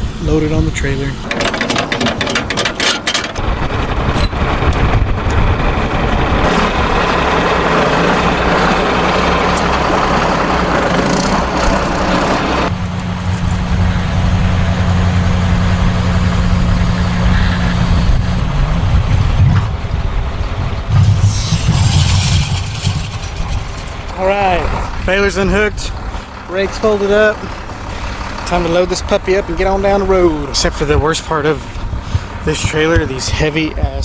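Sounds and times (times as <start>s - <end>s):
diesel engine running: 0.0s - 34.0s
loud noisy sound cutting off: 3.3s - 33.0s.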